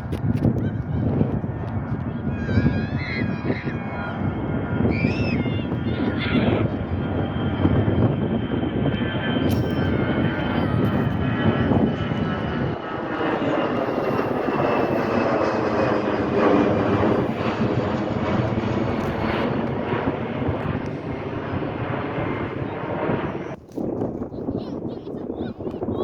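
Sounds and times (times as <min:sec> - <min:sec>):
jet airliner taking off: 0:00.0 - 0:24.0.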